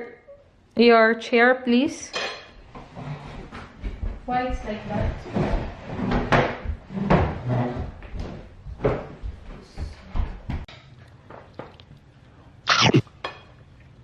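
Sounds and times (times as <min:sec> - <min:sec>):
chair knocking and clattering: 0:05.0 - 0:09.4.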